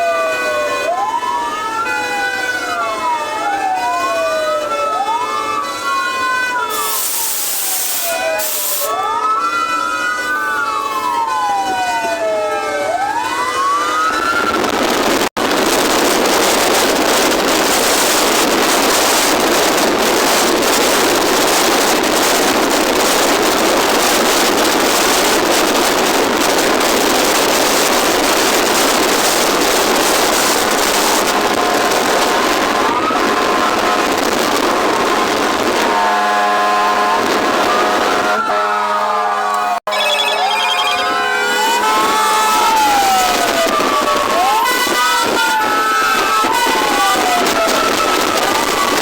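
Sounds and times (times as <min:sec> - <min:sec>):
fire engine siren wailing: 0:00.0 - 0:49.0
steady horn tones: 0:35.8 - 0:42.7.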